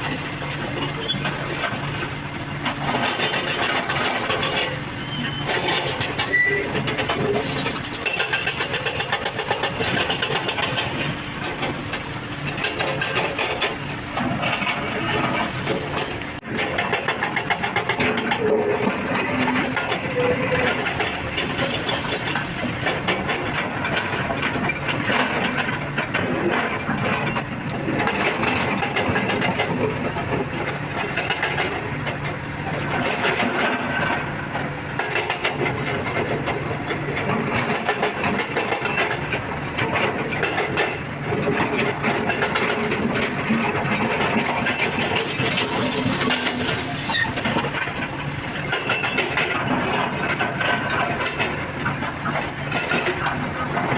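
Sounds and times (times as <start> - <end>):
diesel engine under load: 0.0 - 53.9
machinery clattering and rattling: 0.0 - 53.9.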